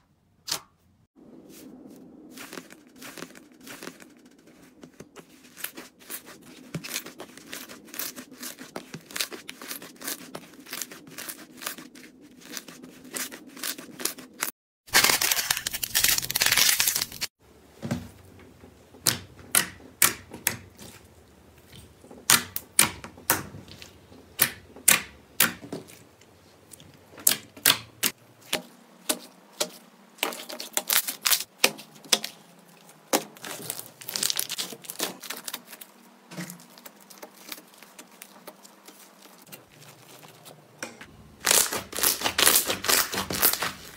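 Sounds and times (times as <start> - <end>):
slime squishing with crackling pops: 19.0 - 36.0, 41.4 - 43.9.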